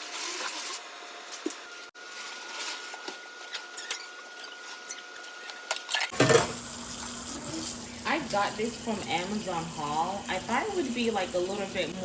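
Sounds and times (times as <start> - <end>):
kitchen items clicking and knocking: 3.5 - 6.6.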